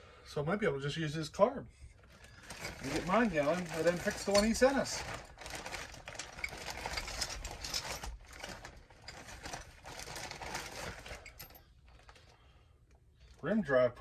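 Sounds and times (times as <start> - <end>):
bag rustling: 2.0 - 12.4
small metal parts clinking: 2.4 - 11.6.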